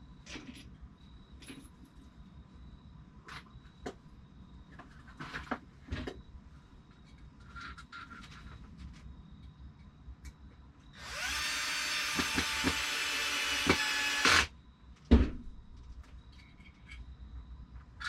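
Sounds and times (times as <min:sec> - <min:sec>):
power drill driving screw: 0:11.0 - 0:14.5
thump: 0:15.1 - 0:15.6.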